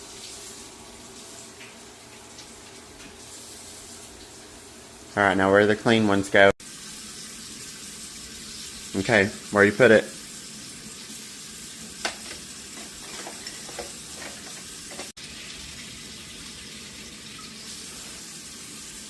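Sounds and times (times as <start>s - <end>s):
dishes knocking: 12.0s - 15.1s
tap running into sink: 12.0s - 15.1s.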